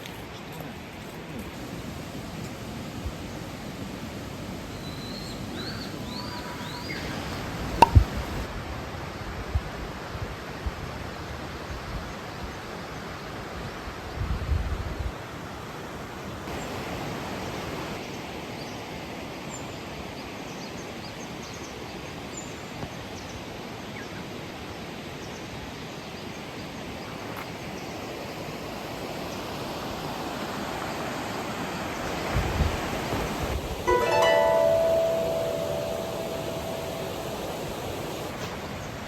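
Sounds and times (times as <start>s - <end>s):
rain: 0.0s - 14.1s, 15.1s - 35.3s
running water: 1.4s - 8.5s.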